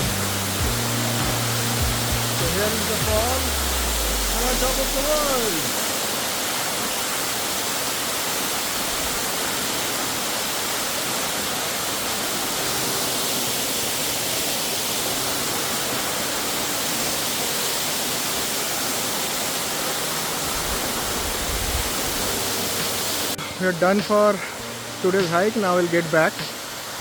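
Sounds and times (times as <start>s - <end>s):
waterfall rushing: 0.0s - 27.0s.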